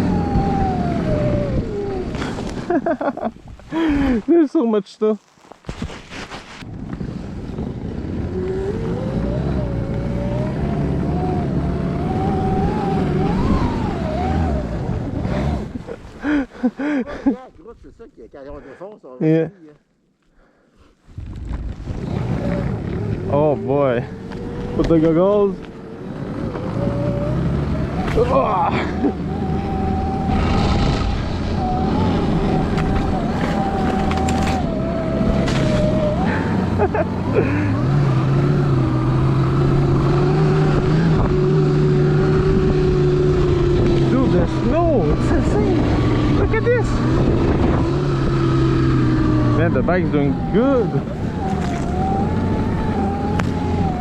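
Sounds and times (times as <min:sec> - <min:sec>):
snow track rumble: 0:00.0 - 0:19.5, 0:21.0 - 0:54.0
electric motor whine: 0:29.0 - 0:36.6, 0:50.1 - 0:54.0.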